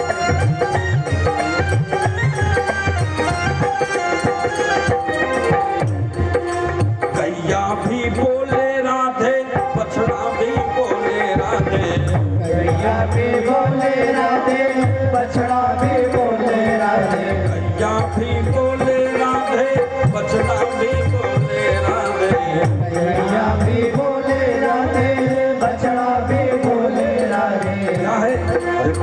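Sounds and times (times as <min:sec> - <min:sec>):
sustained instrumental melody: 0:00.0 - 0:08.4
steady drum rhythm: 0:00.0 - 0:29.0.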